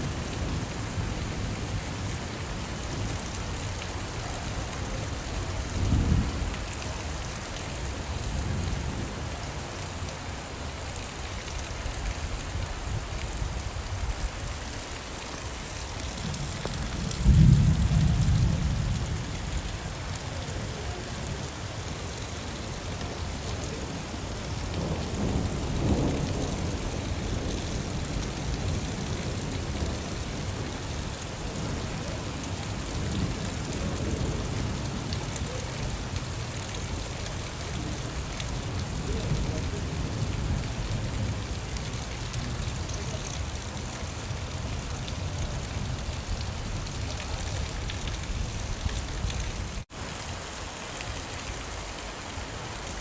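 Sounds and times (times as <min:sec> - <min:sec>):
steady rain: 0:00.0 - 0:53.0
thunder rumbling: 0:16.1 - 0:19.3
loud deep roll of thunder: 0:16.2 - 0:19.3.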